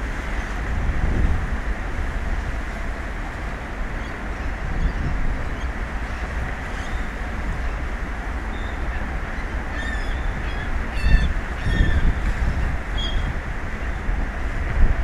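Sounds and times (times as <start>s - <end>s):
sea noise: 0.0s - 15.0s
wind on microphone: 0.0s - 15.0s
seabird calls: 3.4s - 14.0s.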